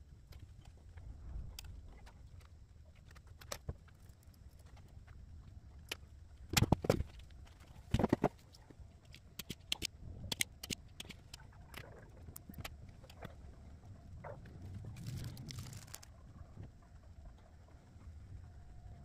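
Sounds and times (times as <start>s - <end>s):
small parts clicking and tapping: 0.2s - 5.2s, 5.8s - 13.3s, 14.9s - 16.1s.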